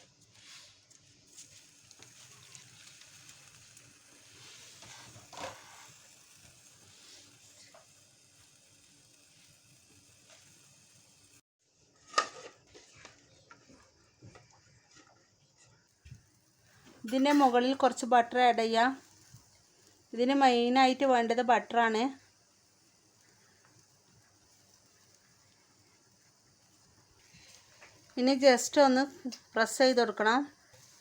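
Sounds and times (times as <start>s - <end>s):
chicken sizzling: 0.0s - 31.0s.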